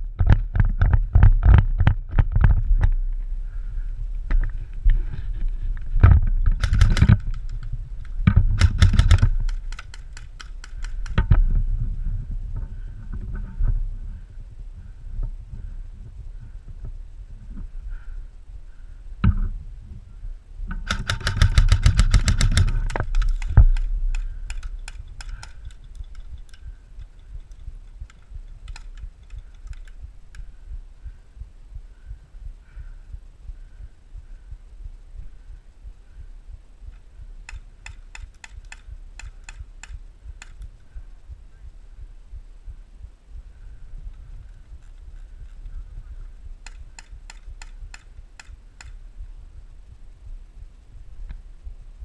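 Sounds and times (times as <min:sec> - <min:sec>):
airsoft guns firing: 0:06.4 - 0:11.2, 0:20.7 - 0:26.8, 0:28.6 - 0:30.0.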